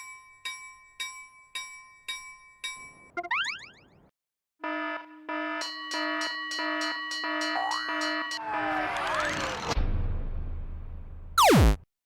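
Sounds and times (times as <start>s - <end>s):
steady pitched tone: 11.4s - 11.8s.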